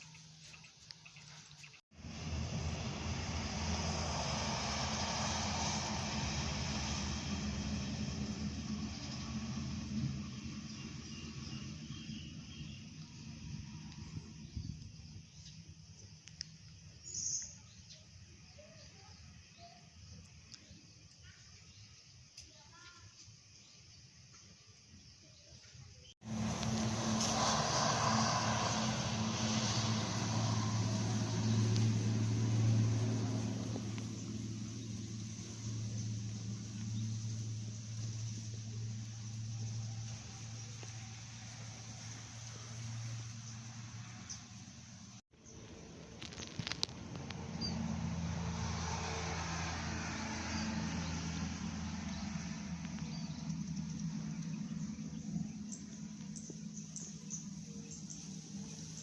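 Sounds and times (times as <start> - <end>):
rushing road noise: 1.9 - 14.5, 26.2 - 59.0
bus driving past: 1.9 - 14.6, 26.2 - 59.0.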